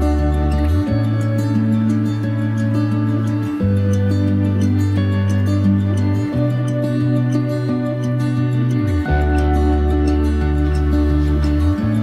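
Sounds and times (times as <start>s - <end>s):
deep bass line: 0.0s - 12.0s
soft background music: 0.0s - 12.0s.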